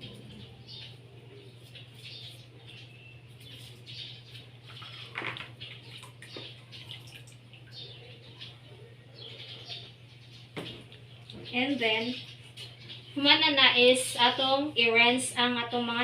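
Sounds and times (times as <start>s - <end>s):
steady low hum: 0.0s - 16.0s
water sounds: 4.9s - 7.8s.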